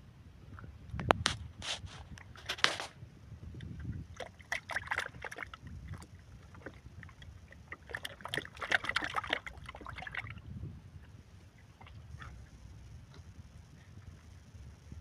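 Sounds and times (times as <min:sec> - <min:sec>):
water splashing and sloshing: 0:01.2 - 0:03.0, 0:03.6 - 0:13.3.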